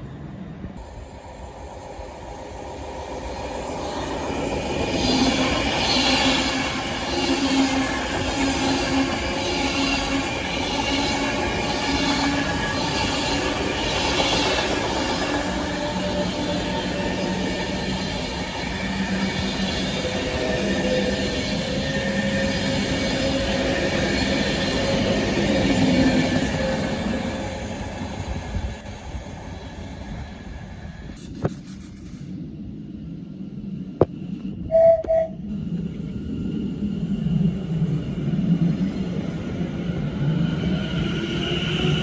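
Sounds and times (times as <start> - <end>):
electric train passing: 0.0 - 31.2, 32.4 - 42.0
short double beep: 34.7 - 35.4.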